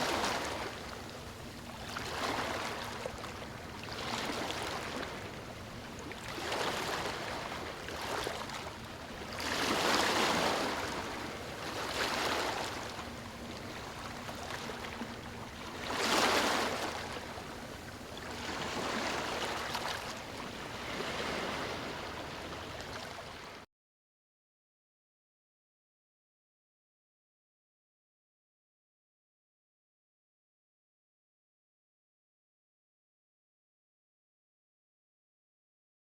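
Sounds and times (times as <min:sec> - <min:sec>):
ocean waves breaking: 0:00.0 - 0:23.6.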